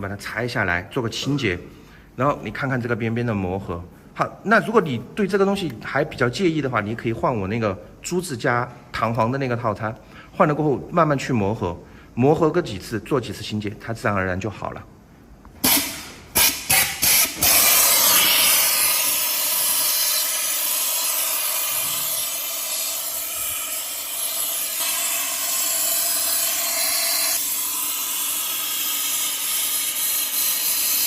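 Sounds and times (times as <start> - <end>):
compressed air hissing from blow gun: 15.6 - 31.0.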